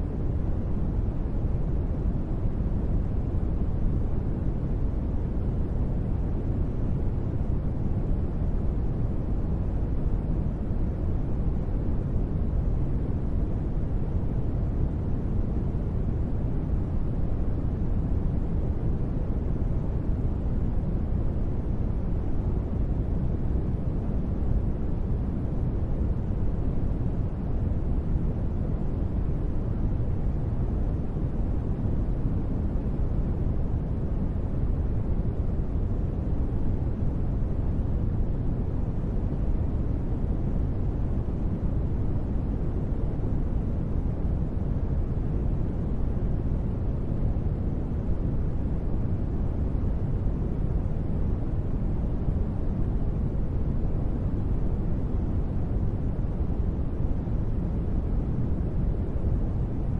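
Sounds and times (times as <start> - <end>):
low synthesized noise bed: 0.0 - 59.9.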